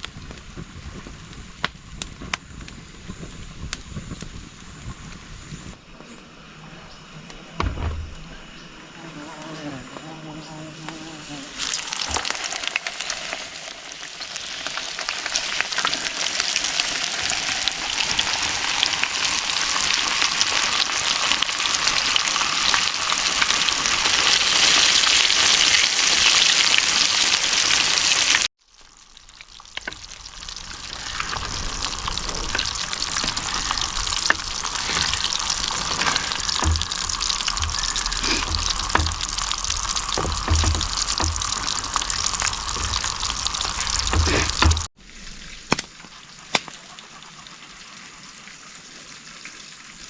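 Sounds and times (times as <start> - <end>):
fish frying in hot oil: 11.6 - 50.0.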